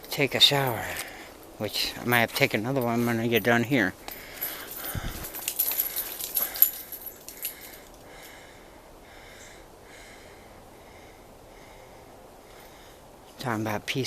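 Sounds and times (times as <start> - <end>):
twigs and leaves crackling underfoot: 0.1 - 8.4.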